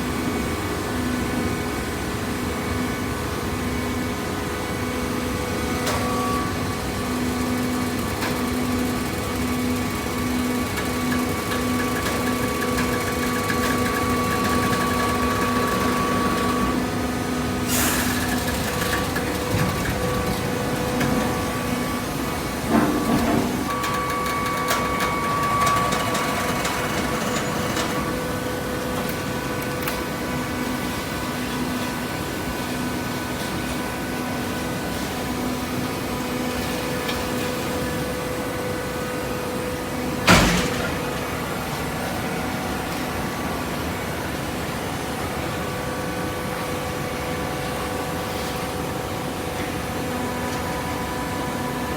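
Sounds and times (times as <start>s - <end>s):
baler machine hum: 3.8s - 32.9s
machine clatter: 6.9s - 29.2s, 40.2s - 42.2s.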